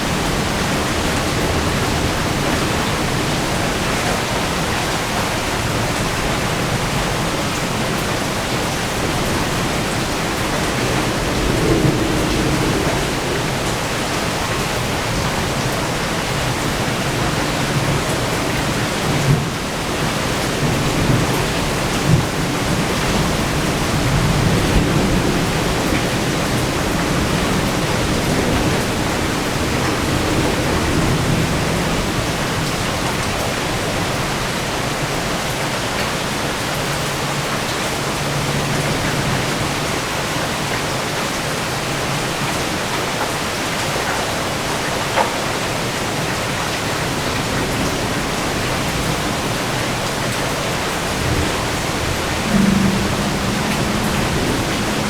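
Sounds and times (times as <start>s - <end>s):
thunder rumbling: 0.0s - 35.4s, 41.8s - 55.0s
heavy rain: 0.0s - 55.0s.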